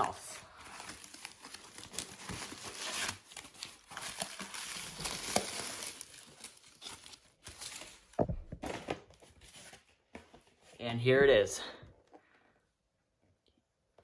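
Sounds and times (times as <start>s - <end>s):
packing material rustling: 0.4s - 10.7s.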